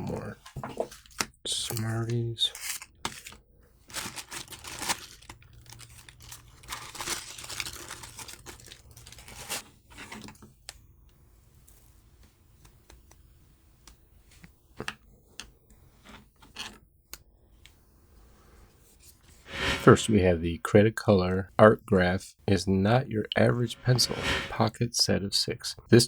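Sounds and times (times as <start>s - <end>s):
paper and plastic rustling: 0.2s - 10.4s.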